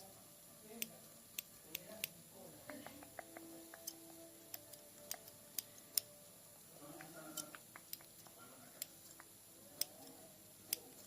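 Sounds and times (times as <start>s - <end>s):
tapping clicks: 2.7s - 6.1s.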